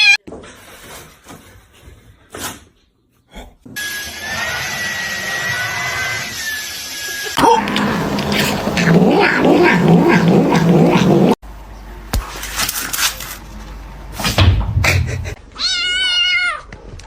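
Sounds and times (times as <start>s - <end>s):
cat yowling loudly: 15.6s - 16.7s.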